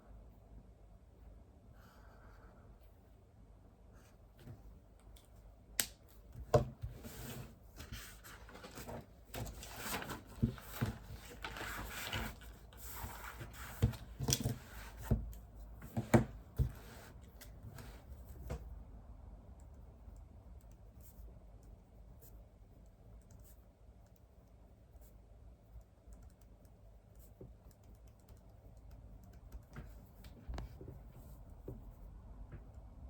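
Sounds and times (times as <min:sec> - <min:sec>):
paper rustling: 0:07.0 - 0:15.1.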